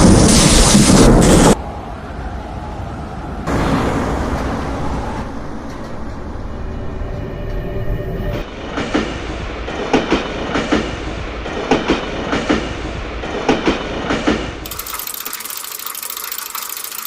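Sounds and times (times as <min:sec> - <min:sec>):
train wheels clacking over rail joints: 0:08.6 - 0:14.7
rapid ratchet-like clicking: 0:14.6 - 0:17.0.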